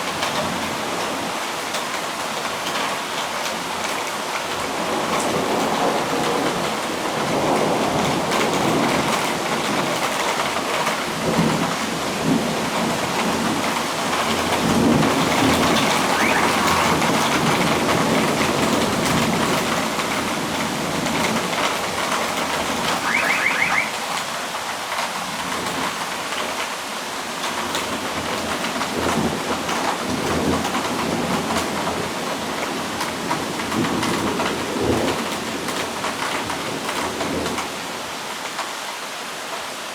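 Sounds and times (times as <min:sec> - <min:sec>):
rain falling: 0:00.0 - 0:39.9
thunder rumbling: 0:13.2 - 0:19.5.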